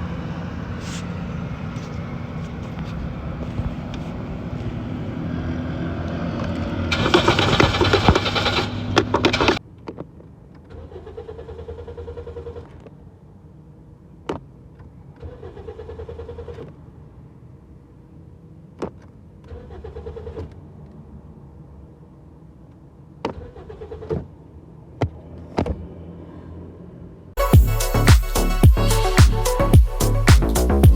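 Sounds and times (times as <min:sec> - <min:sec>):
car engine cranking: 0:06.4 - 0:09.6.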